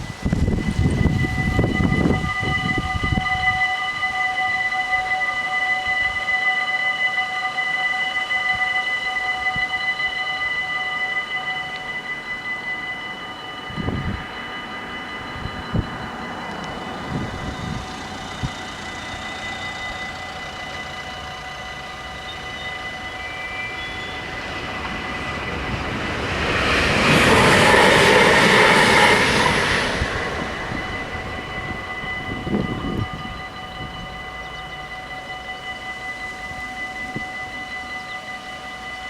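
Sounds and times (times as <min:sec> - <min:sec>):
electric train passing: 0:00.0 - 0:39.0
level crossing bells ringing: 0:09.5 - 0:39.0.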